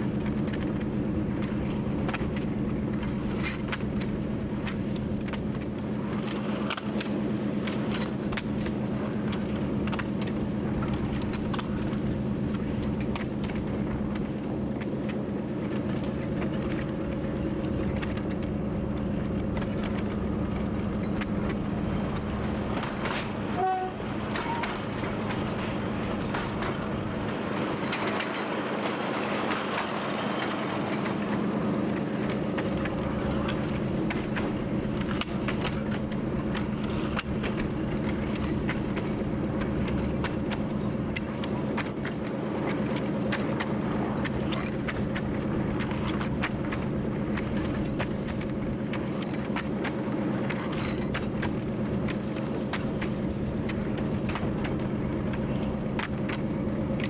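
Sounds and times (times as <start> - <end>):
diesel locomotive engine drone: 0.0 - 57.0
wheels clicking and rattling on rails: 0.0 - 57.0.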